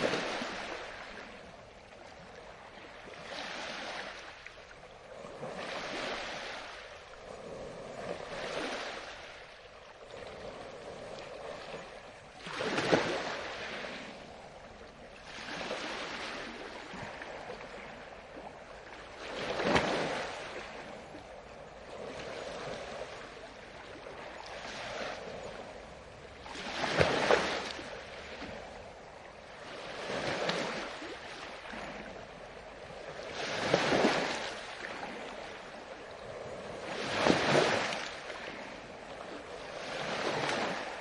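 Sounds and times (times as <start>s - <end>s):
water splashes: 0.0s - 41.0s.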